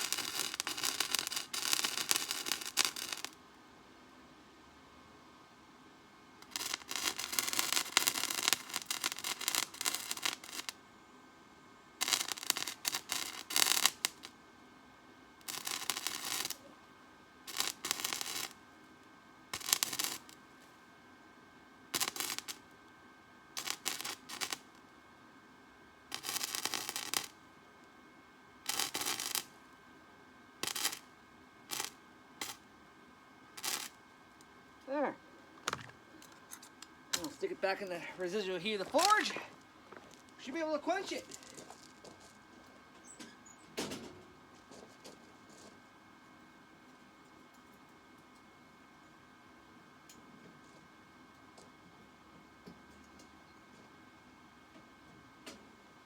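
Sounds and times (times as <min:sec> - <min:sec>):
welder crackling hiss: 0:00.0 - 0:03.4, 0:06.4 - 0:10.8, 0:12.0 - 0:14.3, 0:15.4 - 0:16.7, 0:17.5 - 0:18.6, 0:19.5 - 0:20.4, 0:21.9 - 0:22.7, 0:23.5 - 0:24.8, 0:26.1 - 0:27.4, 0:28.6 - 0:29.6, 0:30.6 - 0:32.7, 0:33.6 - 0:34.0, 0:37.2 - 0:41.9.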